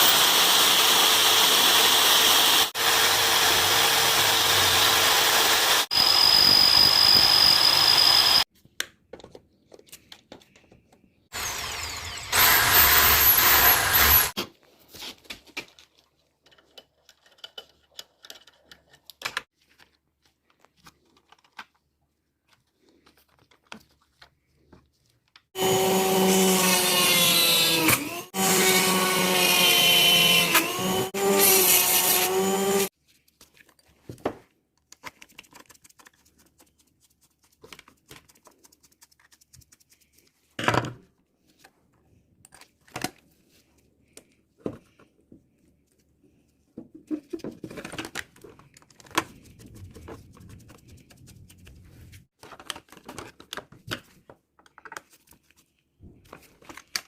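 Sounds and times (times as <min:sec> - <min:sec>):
small power tool motor: 0:00.0 - 0:08.4, 0:11.3 - 0:14.4, 0:25.6 - 0:32.9.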